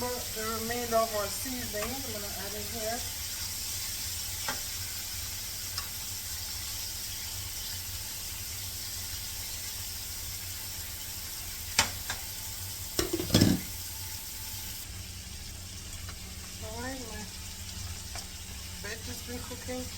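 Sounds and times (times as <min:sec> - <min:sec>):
vegetables sizzling in a skillet: 0:00.0 - 0:19.9
knocks against a pan: 0:13.0 - 0:13.7.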